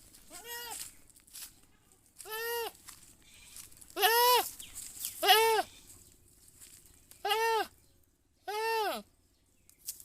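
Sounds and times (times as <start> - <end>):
goat bleating: 0.3 - 0.8, 2.2 - 4.6, 5.2 - 5.8, 7.2 - 7.7, 8.4 - 9.1.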